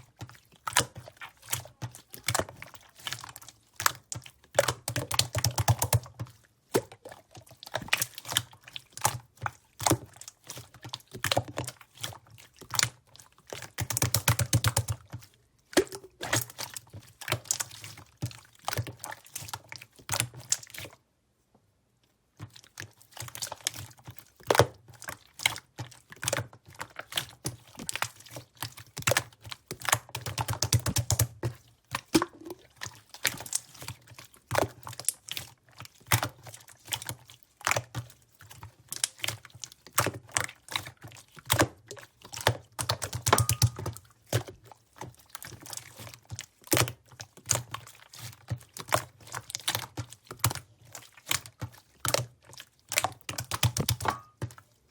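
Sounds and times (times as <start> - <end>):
slime squeezed by hand: 32.1 - 32.7.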